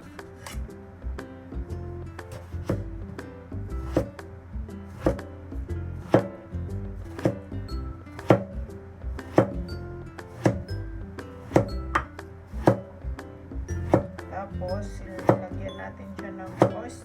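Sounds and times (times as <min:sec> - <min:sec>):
music with percussive beat: 0:00.0 - 0:16.9.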